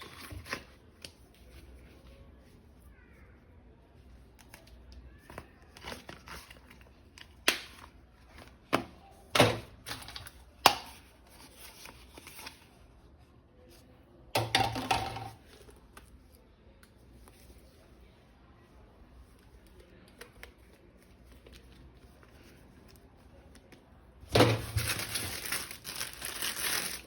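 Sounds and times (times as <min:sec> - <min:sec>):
plastic packaging rustling: 0:24.3 - 0:27.0.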